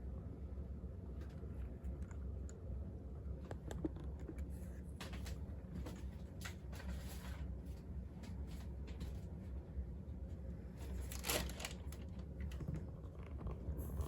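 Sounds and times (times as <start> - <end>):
low electrical hum: 0.0 - 14.0
plastic packaging rustling: 10.9 - 12.1.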